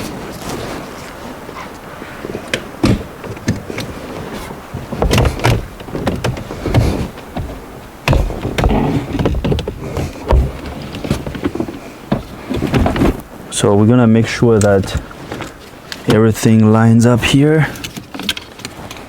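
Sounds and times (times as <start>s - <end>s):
scraping and handling noise: 0.0s - 13.5s, 14.3s - 16.6s, 17.6s - 19.0s
plastic trim knocking: 5.0s - 13.1s.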